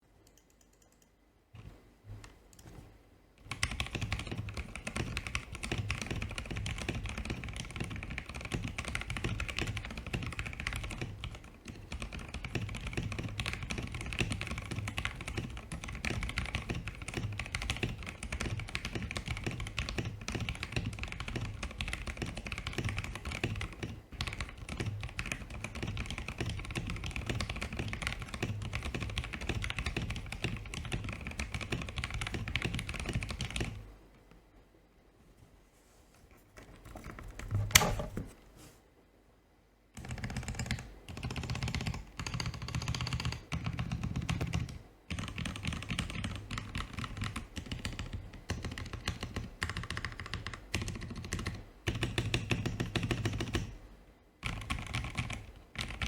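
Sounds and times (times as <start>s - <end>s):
typing on mechanical keyboard: 3.4s - 33.8s, 36.6s - 38.1s, 40.0s - 53.8s, 54.4s - 56.0s.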